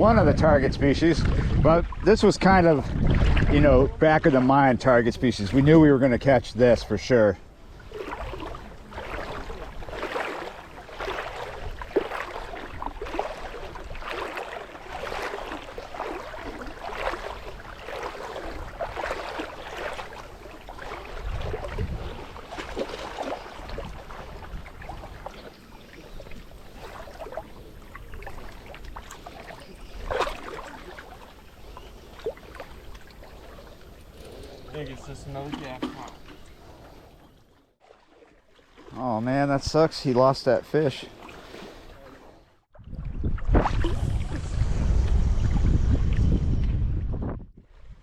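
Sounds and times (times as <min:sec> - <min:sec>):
wind rumble on microphone: 0:00.0 - 0:04.4, 0:20.1 - 0:25.4, 0:42.7 - 0:48.0
river water lapping and splashing: 0:00.0 - 0:46.7.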